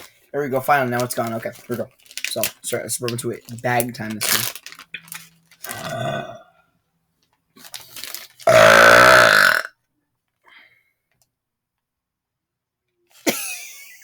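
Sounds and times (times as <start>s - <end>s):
man burping: 5.6s - 6.6s, 8.5s - 9.7s.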